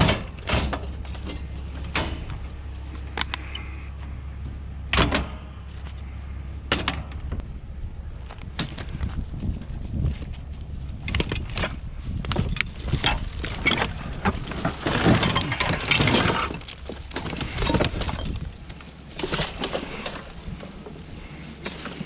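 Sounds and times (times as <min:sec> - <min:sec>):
scrap cracking and clattering: 0:08.3 - 0:22.0.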